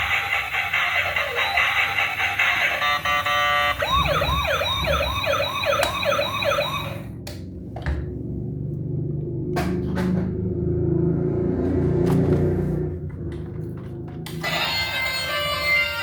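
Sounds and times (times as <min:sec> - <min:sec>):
electronic yelp siren: 0:00.0 - 0:07.2, 0:14.4 - 0:16.0
steady siren tone: 0:00.0 - 0:07.2.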